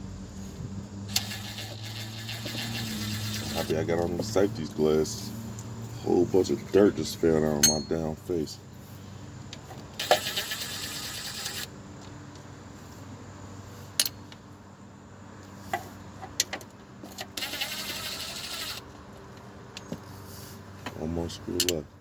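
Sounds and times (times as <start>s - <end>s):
sharp metal clicks: 1.1s - 3.7s, 10.0s - 11.7s, 14.0s - 14.2s, 17.2s - 18.9s
ratchet wrench clicking: 1.1s - 3.8s, 10.0s - 11.7s, 17.3s - 18.9s.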